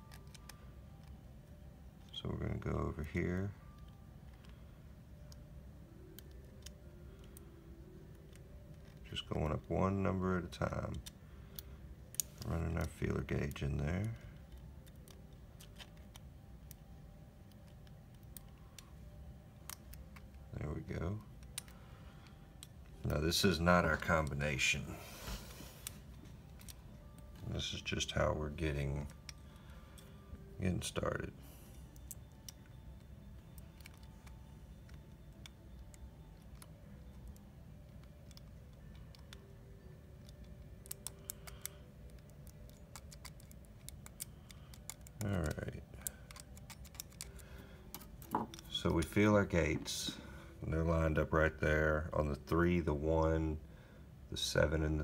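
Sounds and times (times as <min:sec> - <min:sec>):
low steady hum: 0:00.0 - 0:55.0
combination lock wheels clicking: 0:40.2 - 0:48.8.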